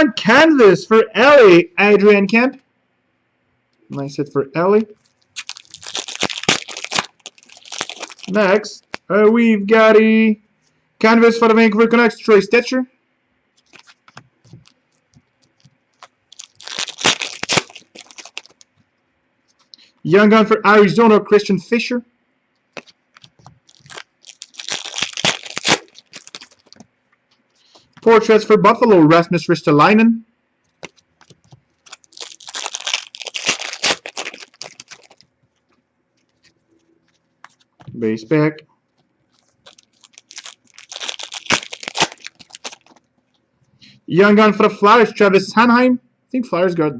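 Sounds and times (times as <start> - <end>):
foil wrapper crinkling: 5.0 - 9.1, 13.6 - 18.7, 22.7 - 26.9, 30.7 - 37.9, 38.9 - 43.1
cards clicking and rustling: 13.6 - 14.8, 30.7 - 38.0, 39.0 - 43.0.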